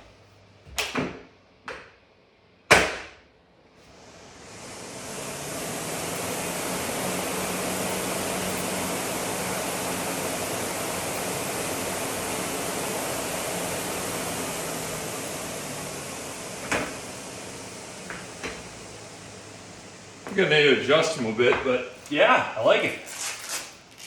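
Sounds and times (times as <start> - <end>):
flywheel fan whooshing: 3.9 - 21.4.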